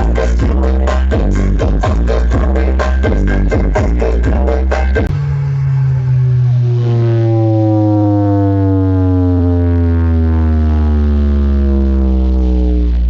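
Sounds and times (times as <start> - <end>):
deep sub-bass drone: 0.0 - 13.0
tones gliding down in pitch: 4.3 - 13.0.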